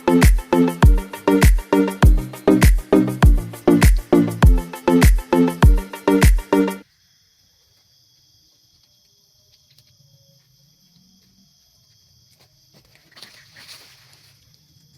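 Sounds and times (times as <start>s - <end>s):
high-pitched insect chorus: 6.8s - 14.9s
rustle: 6.8s - 14.9s.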